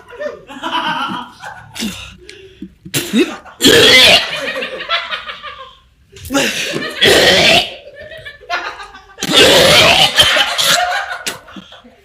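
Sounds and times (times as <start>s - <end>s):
laughter: 0.0s - 2.0s, 3.1s - 7.1s, 7.7s - 12.0s.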